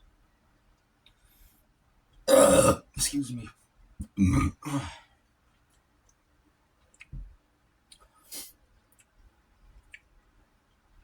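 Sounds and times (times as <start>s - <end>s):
short breathy hiss: 8.2s - 8.6s.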